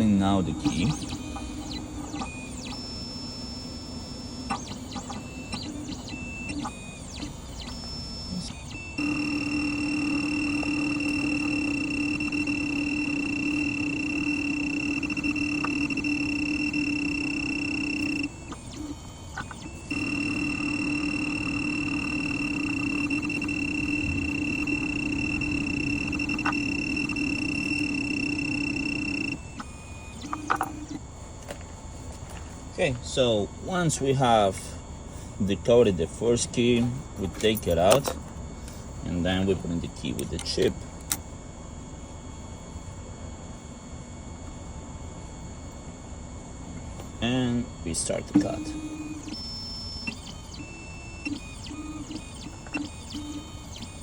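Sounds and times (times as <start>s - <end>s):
machine motors whirring: 0.0s - 32.6s, 47.9s - 54.0s
steady motor hum: 0.0s - 54.0s.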